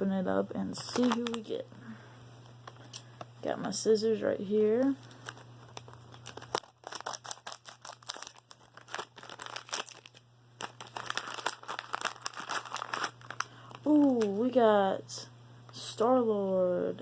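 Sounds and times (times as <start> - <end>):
packaging crinkling and tearing: 0.8 - 1.5, 4.8 - 14.4
scissors cutting packaging: 5.8 - 10.1.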